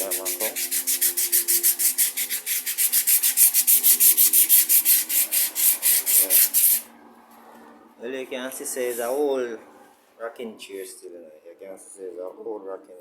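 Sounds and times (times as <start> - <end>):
sandpaper rubbing on wood: 0.0 - 6.9.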